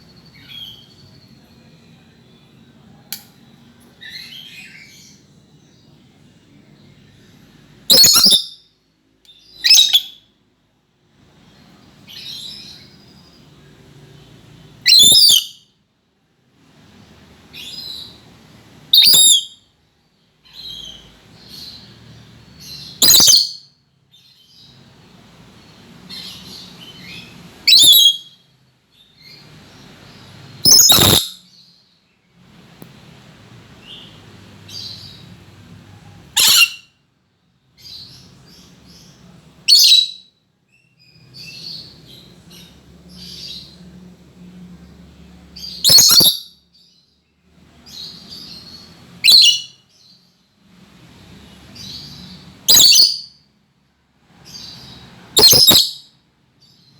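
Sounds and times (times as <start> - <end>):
parrot chattering: 7.9 - 8.4, 30.7 - 31.3, 36.4 - 36.8, 45.8 - 46.4
parrot shrieking: 7.9 - 8.5, 14.9 - 15.5, 27.7 - 28.2, 30.7 - 31.4, 36.4 - 36.9, 45.8 - 46.5, 55.4 - 56.0.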